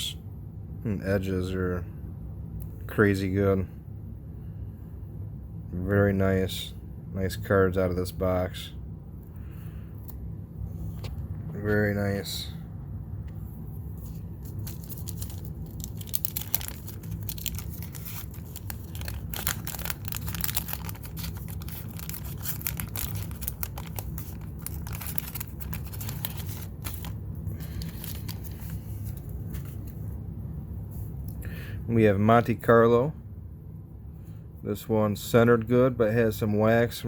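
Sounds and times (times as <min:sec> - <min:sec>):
wax paper wrapper tearing and crinkling: 0:14.0 - 0:30.0.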